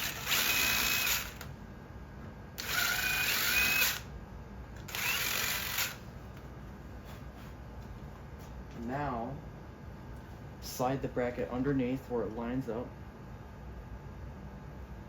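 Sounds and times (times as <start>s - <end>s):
power drill whining: 0.0s - 1.5s, 2.6s - 4.0s, 4.9s - 6.0s.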